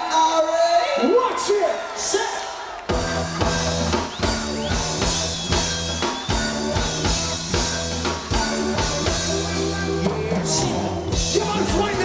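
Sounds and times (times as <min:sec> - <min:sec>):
drum kit beat: 0:02.9 - 0:12.0
repeating bass line: 0:02.9 - 0:12.0.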